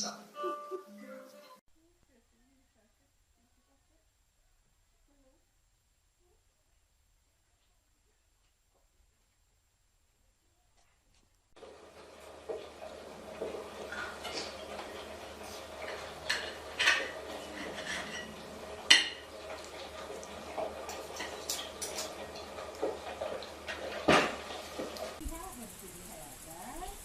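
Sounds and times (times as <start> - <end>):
faint steady hum: 25.2 - 27.0.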